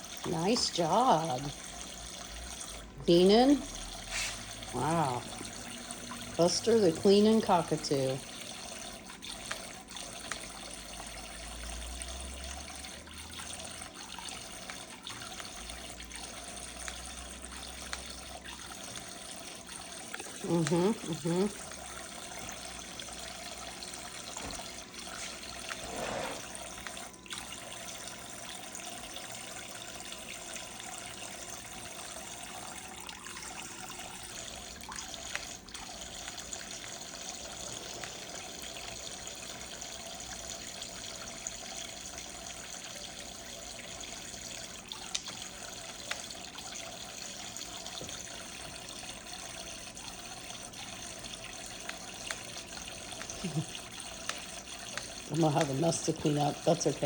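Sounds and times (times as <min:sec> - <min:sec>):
water running from toy faucet: 0:00.0 - 0:57.0.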